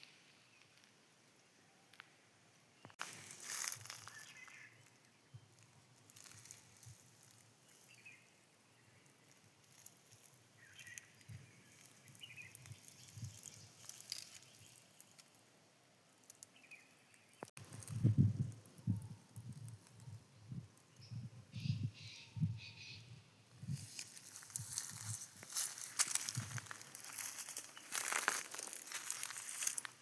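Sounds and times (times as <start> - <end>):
rustling and crackling: 2.9 - 15.5, 16.1 - 21.0, 23.6 - 30.0.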